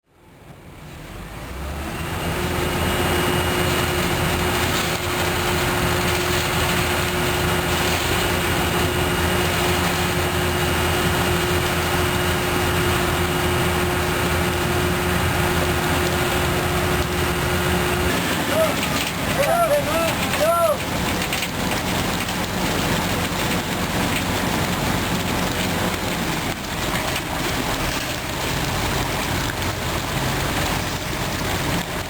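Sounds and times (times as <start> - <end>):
diesel engine running: 0.1 - 32.0
steady whine: 1.9 - 31.5.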